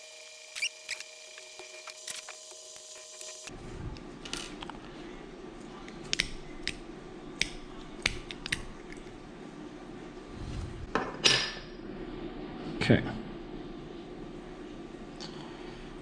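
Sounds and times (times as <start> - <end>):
steady low hum: 3.4 - 16.0.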